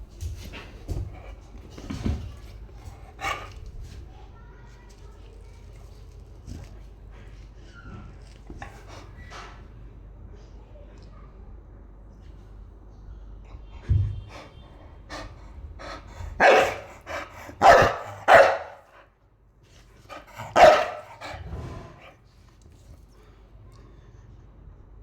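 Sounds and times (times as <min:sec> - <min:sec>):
dog barking: 0:16.4 - 0:19.0, 0:20.1 - 0:21.4.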